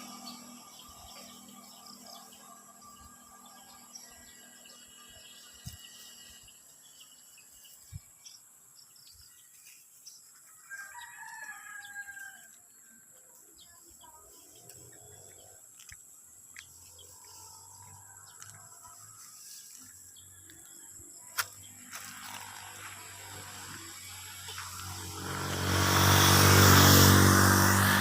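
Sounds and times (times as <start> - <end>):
rooster crowing: 10.7 - 12.6.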